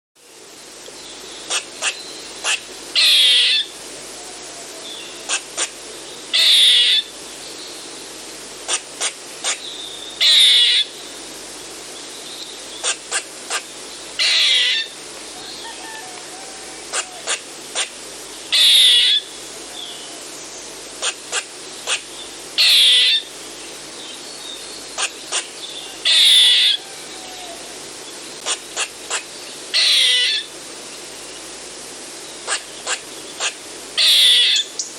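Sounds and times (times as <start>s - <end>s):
squirrel alarm call: 1.4s - 3.7s, 6.3s - 7.1s, 8.7s - 10.9s, 12.8s - 15.0s, 18.5s - 19.3s, 21.0s - 23.3s, 25.0s - 27.6s, 28.4s - 30.5s, 32.4s - 34.9s.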